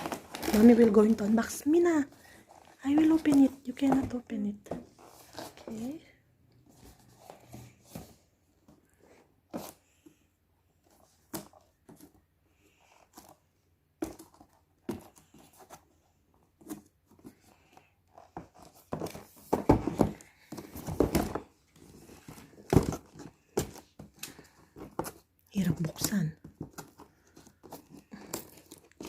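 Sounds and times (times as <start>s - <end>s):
packaging rustling: 0.0s - 4.1s, 26.5s - 29.0s.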